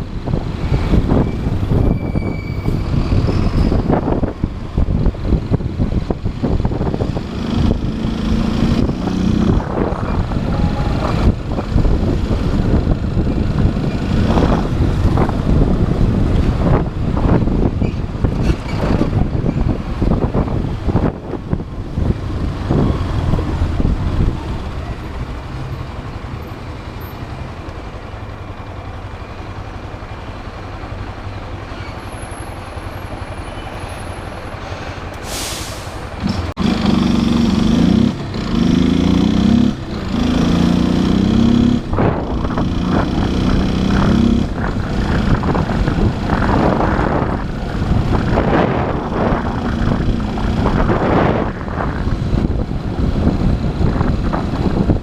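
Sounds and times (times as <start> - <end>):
motorcycle engine revving: 6.5 - 17.4, 36.2 - 55.0
brief hiss: 35.2 - 36.1.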